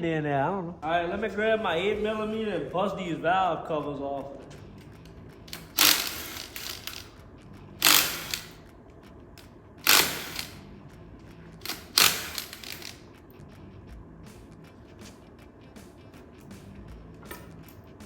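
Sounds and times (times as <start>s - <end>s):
cordless power tool spinning bolts: 5.5s - 7.2s, 7.8s - 8.7s, 9.8s - 10.7s, 11.6s - 13.1s.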